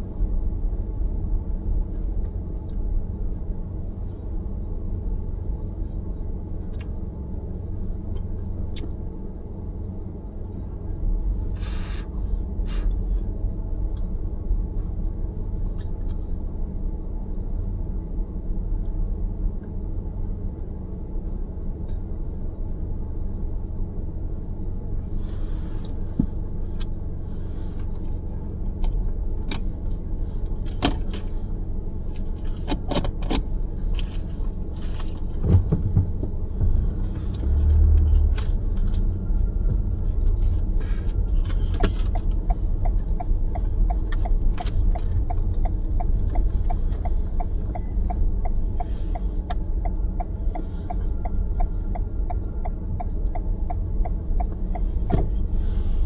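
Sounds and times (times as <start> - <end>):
car road noise rumble: 0.0 - 56.0
turn signal ticking: 32.1 - 56.0.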